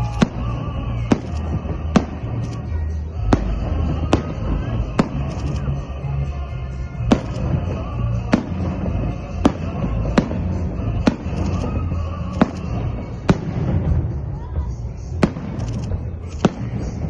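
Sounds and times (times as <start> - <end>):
fireworks bangs: 0.0 - 5.9, 7.0 - 17.0
steady low rumble: 0.0 - 17.0.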